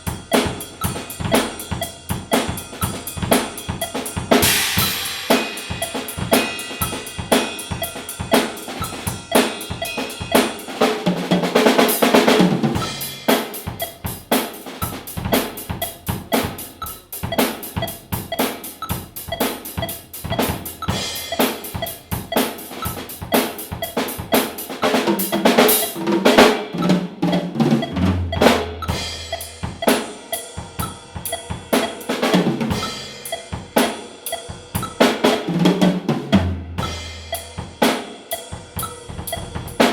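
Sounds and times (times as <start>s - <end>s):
snare drum strokes and rolls: 0.0s - 30.2s, 31.8s - 34.1s, 34.8s - 38.2s
cymbals ringing: 0.0s - 35.5s, 36.8s - 39.9s
tom drum fills: 0.0s - 39.9s.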